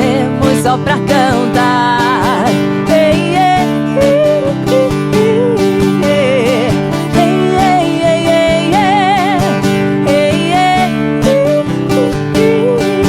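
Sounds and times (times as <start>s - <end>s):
strummed acoustic guitars: 0.0s - 13.0s
wavering melody line: 0.1s - 13.0s.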